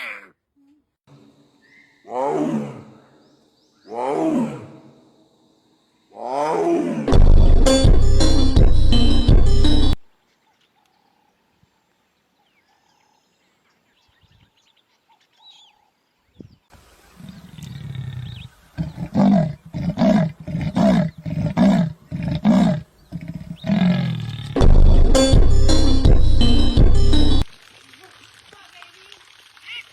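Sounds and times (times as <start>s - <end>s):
big cat roaring: 2.1s - 3.2s, 3.9s - 5.0s, 6.2s - 7.2s, 17.2s - 24.6s.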